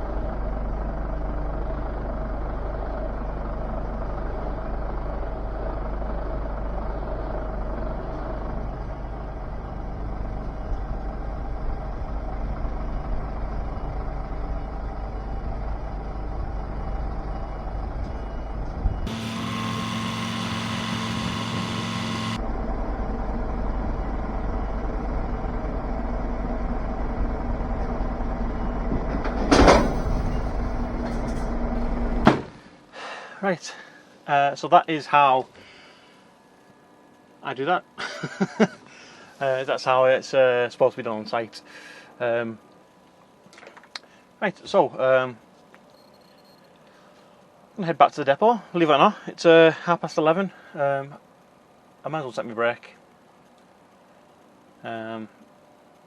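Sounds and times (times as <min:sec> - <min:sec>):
truck diesel engine idling: 0:00.0 - 0:32.2.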